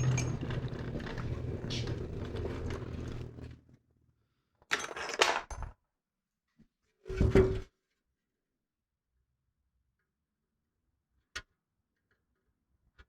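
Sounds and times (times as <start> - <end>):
clattering handling noise with knocks: 0.0 - 3.5.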